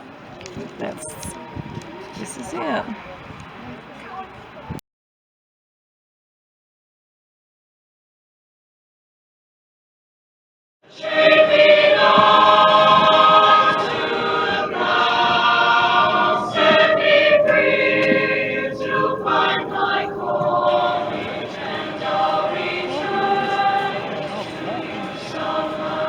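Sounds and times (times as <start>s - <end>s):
choir singing held chords: 0.8s - 2.9s, 10.9s - 26.0s.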